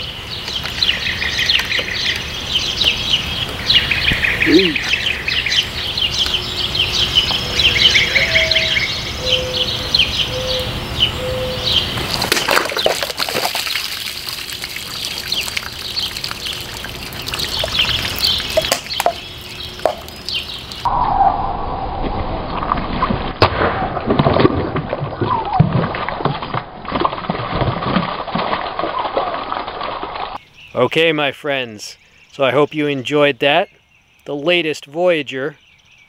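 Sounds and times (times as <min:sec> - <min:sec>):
birds chirping: 0:00.0 - 0:20.9, 0:30.3 - 0:36.0
knife slashing water bottles: 0:12.0 - 0:14.8.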